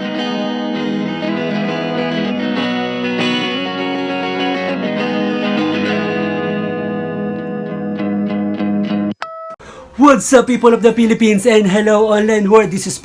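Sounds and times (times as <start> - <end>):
electric guitar music: 0.0 - 9.3.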